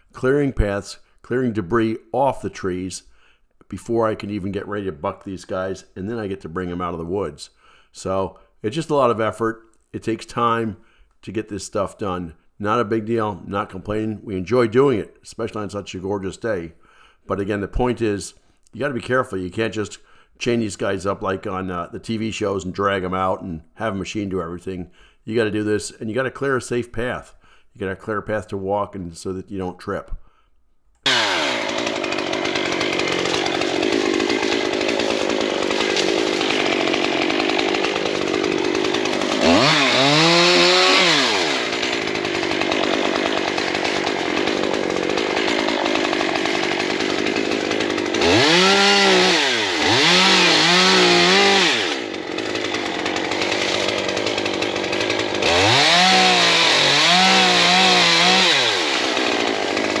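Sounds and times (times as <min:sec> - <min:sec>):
chainsaw idling and revving: 0:31.0 - 1:00.0.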